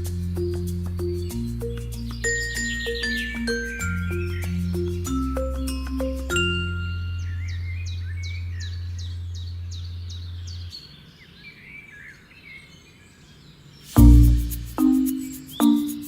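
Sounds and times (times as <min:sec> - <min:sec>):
music: 0:00.0 - 0:07.7, 0:13.9 - 0:16.0
small birds chirping: 0:00.0 - 0:16.0
birds warbling: 0:00.4 - 0:12.7.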